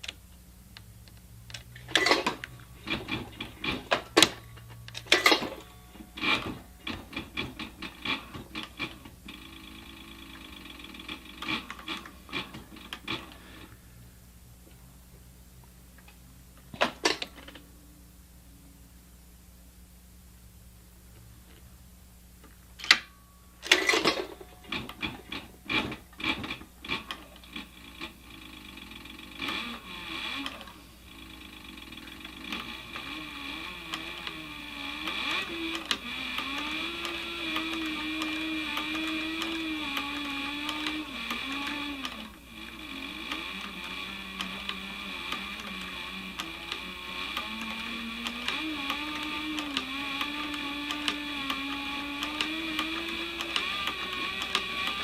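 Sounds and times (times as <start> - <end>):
sharp clicks and knocks: 0.0 - 9.5, 35.0 - 55.0
sewing machine stitching leather: 1.5 - 13.7, 22.8 - 55.0.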